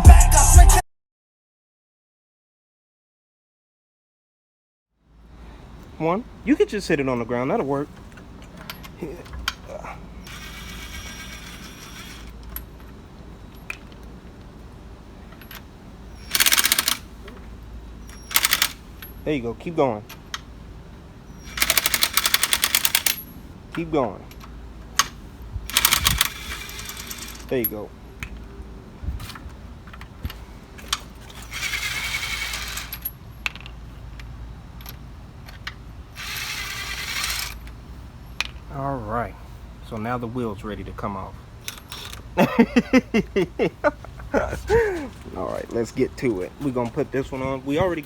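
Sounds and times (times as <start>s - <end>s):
lug wrench clinking on nuts: 8.1s - 14.0s, 15.2s - 19.4s, 21.3s - 28.4s, 30.8s - 38.7s, 41.6s - 42.9s
metallic rattle: 15.3s - 17.2s, 18.0s - 19.2s, 21.3s - 23.4s
metallic clicks and clinks of tools: 15.3s - 17.4s, 18.1s - 19.2s, 41.6s - 42.2s.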